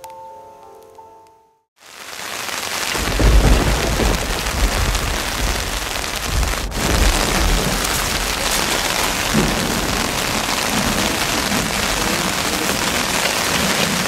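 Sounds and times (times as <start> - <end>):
water hissing: 1.8 - 14.0
low rumble: 3.0 - 14.0.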